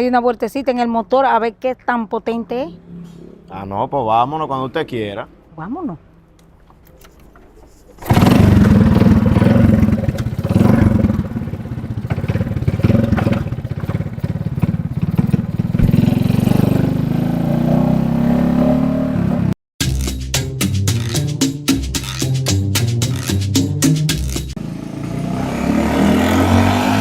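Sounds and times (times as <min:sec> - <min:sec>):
motorcycle engine revving: 0:08.0 - 0:19.6, 0:24.2 - 0:27.0.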